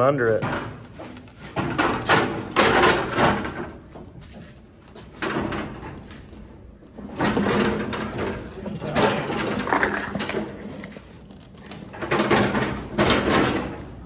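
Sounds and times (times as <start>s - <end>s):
person crawling scraping and rustling: 9.5s - 11.8s.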